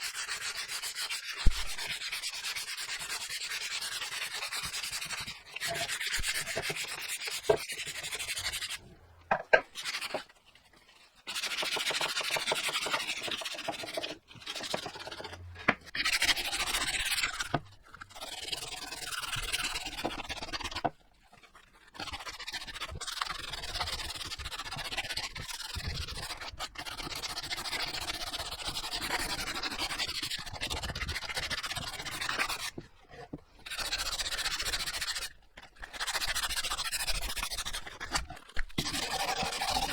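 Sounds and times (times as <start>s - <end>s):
sanding wood: 0.0s - 10.2s, 11.3s - 17.6s.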